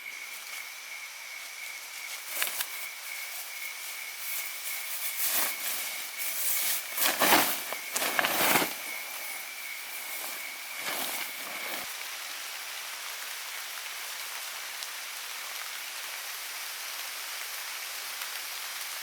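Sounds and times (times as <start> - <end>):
high-pitched insect drone: 0.0 - 12.0
rustling and crackling: 1.4 - 11.9.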